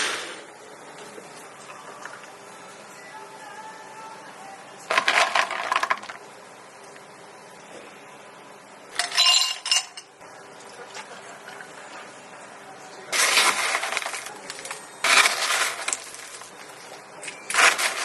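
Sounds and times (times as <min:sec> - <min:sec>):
glassware clattering rattles: 0:09.0 - 0:10.2
glassware clinking: 0:09.0 - 0:10.2.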